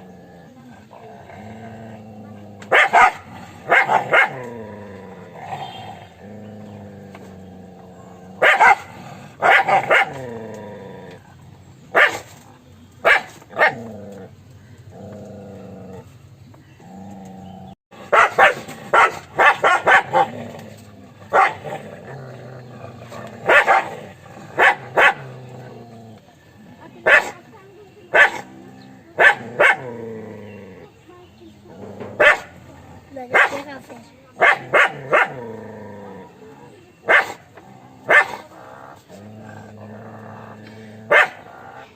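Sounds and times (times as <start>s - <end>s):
dog barking: 2.7s - 4.5s, 8.4s - 10.2s, 11.9s - 12.3s, 13.0s - 13.8s, 18.1s - 20.3s, 21.3s - 21.6s, 23.5s - 24.0s, 24.6s - 25.3s, 27.0s - 27.4s, 28.1s - 28.5s, 29.2s - 29.9s, 32.2s - 32.6s, 33.3s - 33.7s, 34.4s - 35.4s, 37.1s - 37.4s, 38.1s - 38.5s, 41.1s - 41.4s.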